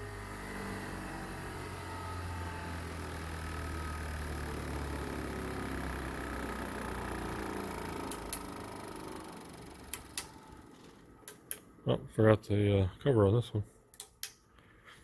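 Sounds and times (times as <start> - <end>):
bench grinder humming: 0.0 - 11.1
sharp clicks: 9.8 - 10.4, 13.9 - 14.4.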